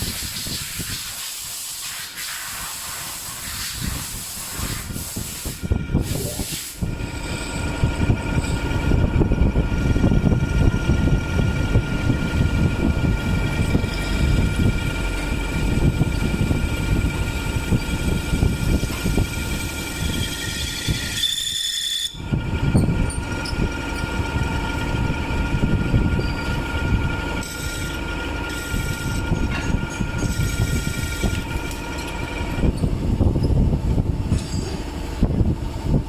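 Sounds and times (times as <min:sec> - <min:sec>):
machine grinding metal: 0:06.8 - 0:33.6.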